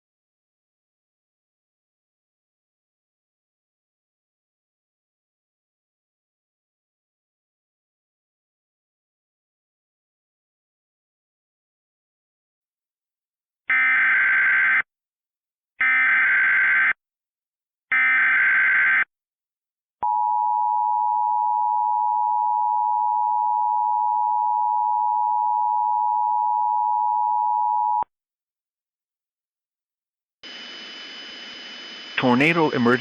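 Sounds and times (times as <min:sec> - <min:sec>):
buzzy digital data bursts: 0:30.4 - 0:33.0.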